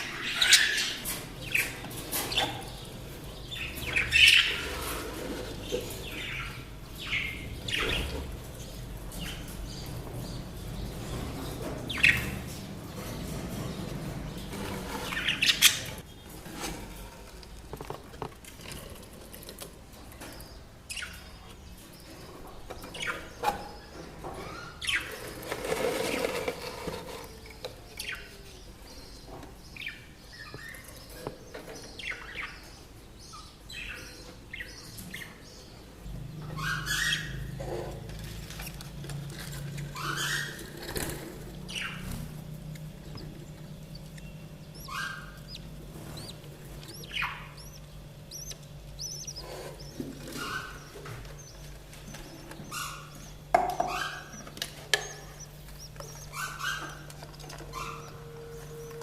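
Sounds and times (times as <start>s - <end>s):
budgerigars chirping: 0.0s - 16.1s, 20.2s - 26.4s, 27.0s - 59.0s
low steady hum: 32.0s - 59.0s.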